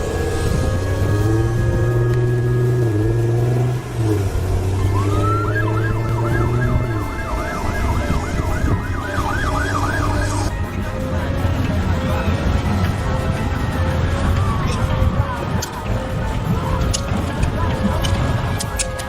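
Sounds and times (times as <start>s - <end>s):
siren yelping: 0.0s - 10.6s
low vehicle rumble: 0.0s - 19.0s.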